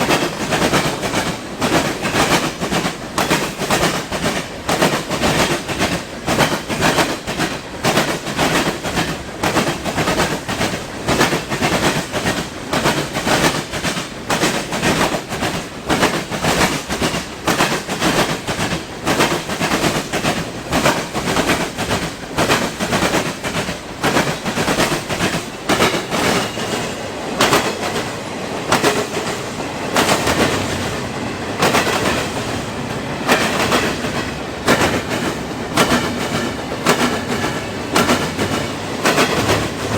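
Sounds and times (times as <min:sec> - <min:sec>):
railroad wheels clickety-clack: 0:00.0 - 0:39.9
train rumble: 0:00.0 - 0:39.9.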